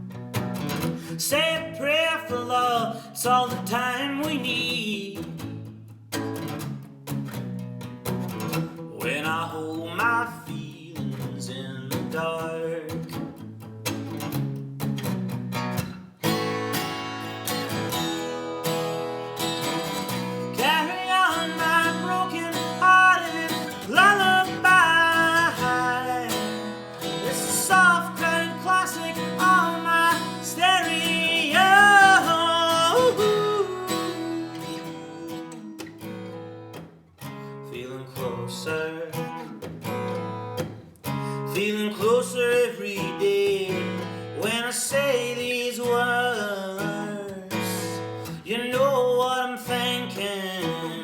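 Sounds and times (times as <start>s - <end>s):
acoustic guitar strumming: 0.0s - 51.0s
person singing: 20.2s - 36.2s.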